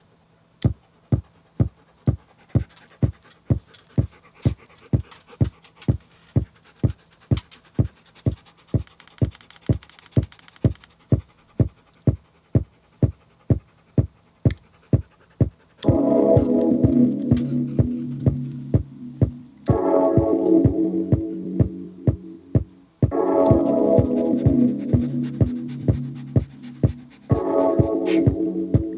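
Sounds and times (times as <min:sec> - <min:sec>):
high hi-hat ticks: 0:00.6 - 0:19.9, 0:21.6 - 0:28.9
electronic kick drum beat: 0:00.6 - 0:28.9
loud synth chords: 0:15.8 - 0:28.9
low hum: 0:15.8 - 0:28.9.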